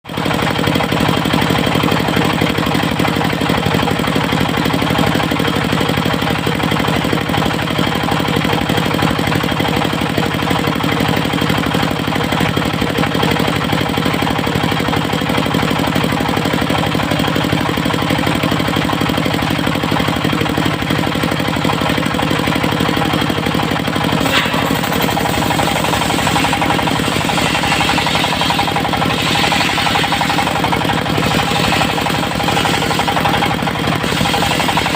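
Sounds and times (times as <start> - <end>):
diesel engine knocking: 0.1 - 34.9.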